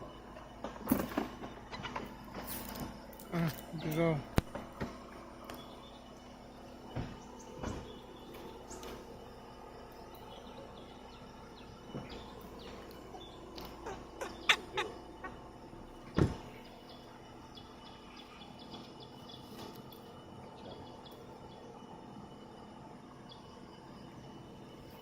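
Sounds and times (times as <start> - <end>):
birds calling: 0.0 - 25.0
forest ambience: 0.0 - 25.0.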